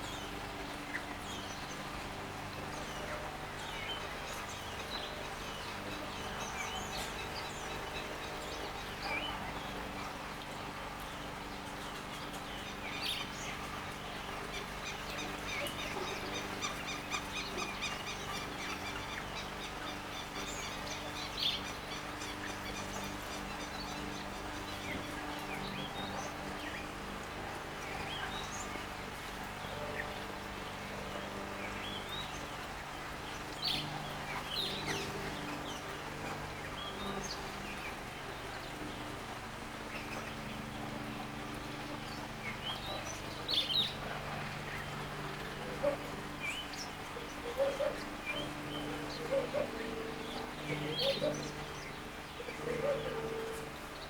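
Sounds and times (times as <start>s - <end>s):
birds chirping and calling: 45.4s - 54.0s.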